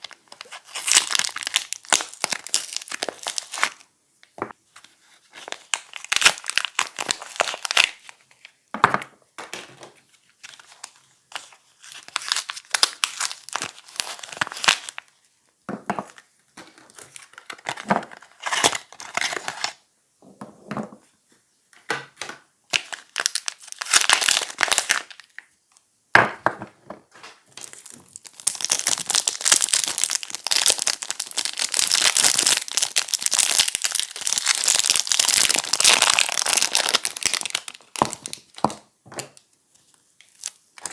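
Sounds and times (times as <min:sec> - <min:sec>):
packaging crinkling and tearing: 0:00.0 - 0:03.9, 0:04.8 - 0:08.6, 0:10.0 - 0:15.2, 0:16.8 - 0:19.8, 0:22.7 - 0:25.4, 0:27.5 - 0:38.7, 0:40.2 - 0:40.9.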